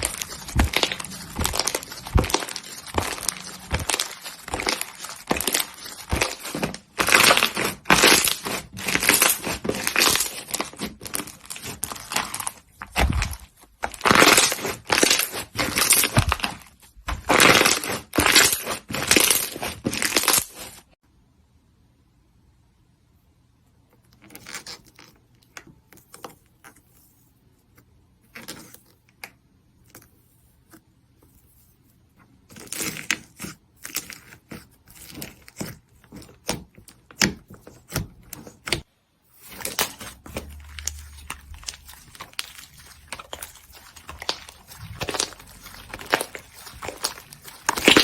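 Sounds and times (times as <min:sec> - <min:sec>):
slime crackling and popping: 0:00.0 - 0:20.8, 0:32.7 - 0:48.0.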